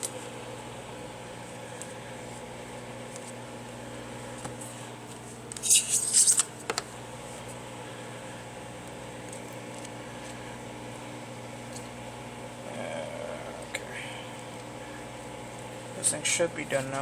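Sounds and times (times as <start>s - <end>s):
microwave oven humming: 0.0s - 17.0s
scratchy scraping: 5.6s - 6.5s.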